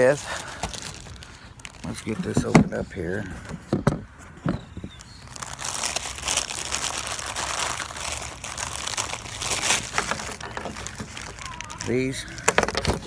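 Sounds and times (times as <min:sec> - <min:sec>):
packaging crinkling and tearing: 0:00.0 - 0:03.2, 0:04.8 - 0:13.0.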